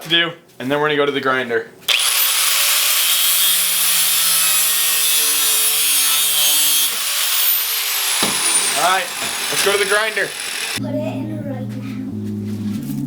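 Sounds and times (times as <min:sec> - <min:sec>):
power tool cutting steel: 0:01.9 - 0:10.8.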